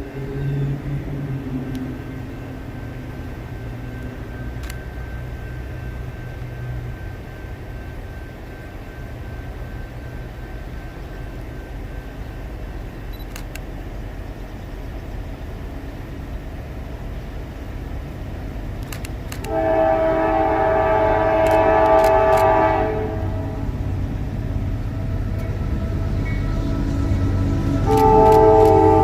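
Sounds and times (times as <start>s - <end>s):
locomotive air horn blast: 19.4s - 23.9s, 25.1s - 29.0s
low rumble: 21.1s - 29.0s.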